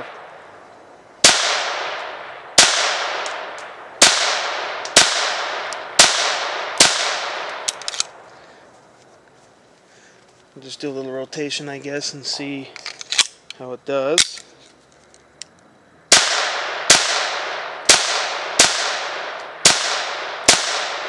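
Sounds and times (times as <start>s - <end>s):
pistol shots ringing out: 1.2s - 7.8s, 16.1s - 21.0s.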